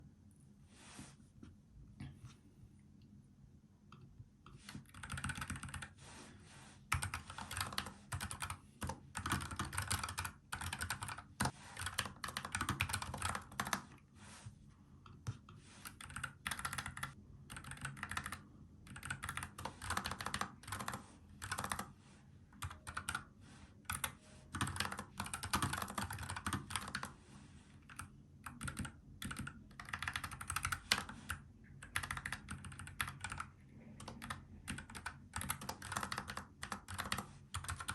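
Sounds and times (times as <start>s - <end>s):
mechanical keyboard typing: 4.8s - 5.9s, 6.9s - 14.0s, 15.2s - 21.9s, 22.5s - 23.3s, 23.9s - 27.2s, 27.9s - 37.9s.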